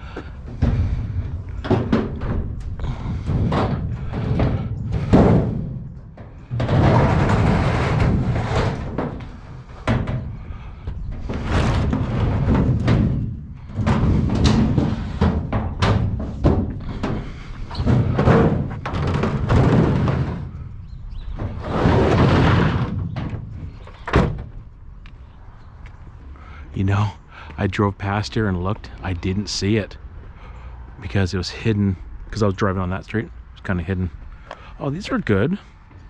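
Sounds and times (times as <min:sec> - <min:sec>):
heavy metal thuds and bangs: 0:00.0 - 0:24.9
metal scraping: 0:00.3 - 0:24.1.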